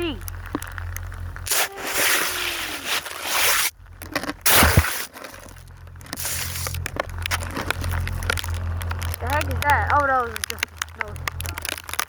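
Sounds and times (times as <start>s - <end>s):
snow scraping against microphone: 0.0s - 9.5s
handling clicks and crackles: 0.0s - 12.0s.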